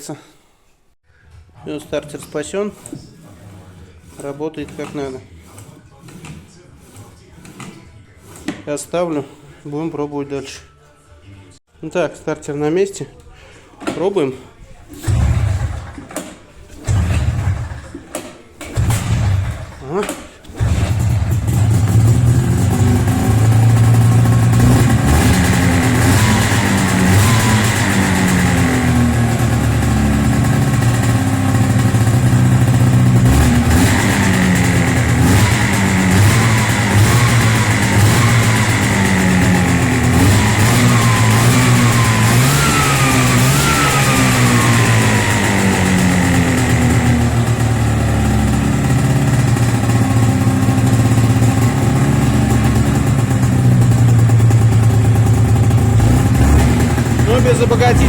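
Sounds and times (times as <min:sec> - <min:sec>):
snowmobile engine running roughly: 0:15.0 - 0:58.0.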